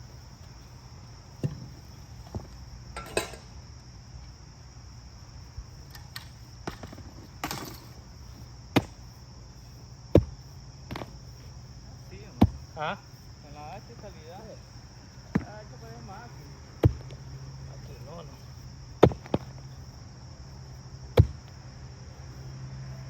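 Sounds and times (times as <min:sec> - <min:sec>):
crickets chirring: 0:00.0 - 0:23.0
axe chopping into stump: 0:01.4 - 0:02.5, 0:08.7 - 0:09.0, 0:10.1 - 0:11.2, 0:12.4 - 0:12.6, 0:15.3 - 0:15.6, 0:16.8 - 0:17.2, 0:19.0 - 0:19.6, 0:21.1 - 0:21.6.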